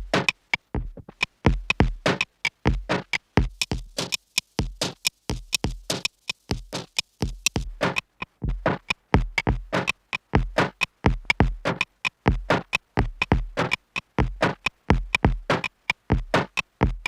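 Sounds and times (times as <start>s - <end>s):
filtered choppy drum machine beat: 0.0s - 17.0s
deep kick drum: 0.8s - 2.1s, 7.2s - 9.8s, 10.4s - 11.7s, 12.3s - 13.6s, 14.2s - 17.0s.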